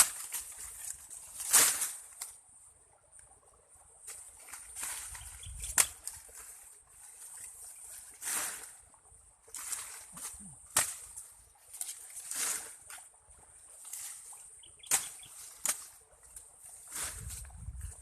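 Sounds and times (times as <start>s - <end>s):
corn ears snapping off: 0.0s - 2.4s, 4.1s - 6.3s, 9.5s - 13.0s, 14.8s - 16.0s
corn stalks rustling: 0.0s - 2.4s, 4.0s - 8.8s, 9.4s - 18.0s.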